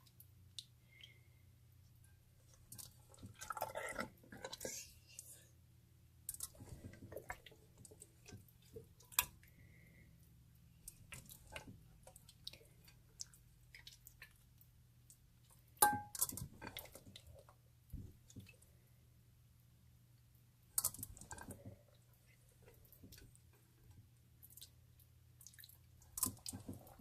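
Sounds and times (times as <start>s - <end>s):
slime squelching with sticky clicks: 20.8s - 22.0s.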